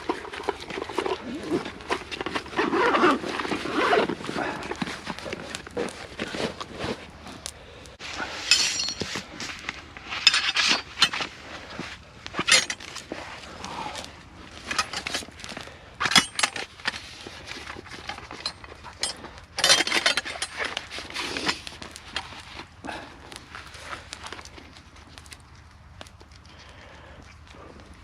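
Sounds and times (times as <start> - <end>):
metal cookware clinking and scraping: 8.4 - 9.2.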